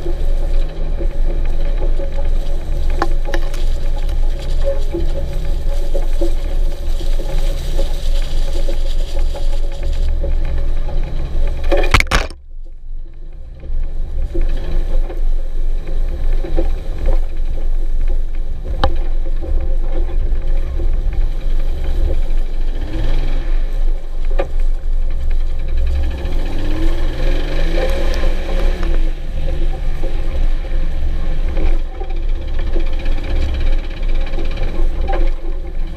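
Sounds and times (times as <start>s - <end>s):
car engine running while driving: 0.0s - 35.9s
sharp clatter: 0.0s - 35.9s.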